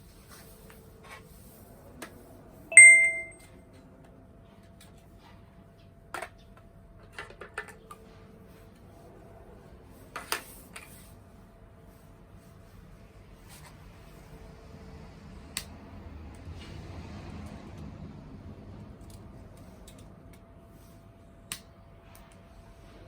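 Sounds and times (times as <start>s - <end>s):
metal object ringing when struck: 2.7s - 3.4s.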